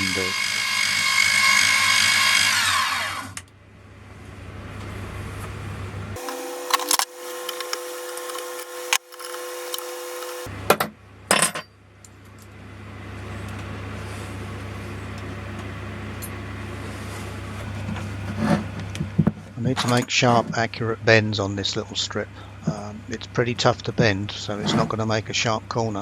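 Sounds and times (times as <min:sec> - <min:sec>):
milling machine humming: 0:00.0 - 0:03.4, 0:04.3 - 0:10.7.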